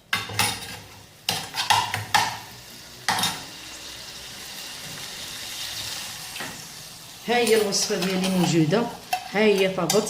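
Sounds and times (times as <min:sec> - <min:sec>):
steady sizzle: 0:00.0 - 0:10.0
utensil scraping in a pot: 0:07.3 - 0:10.0.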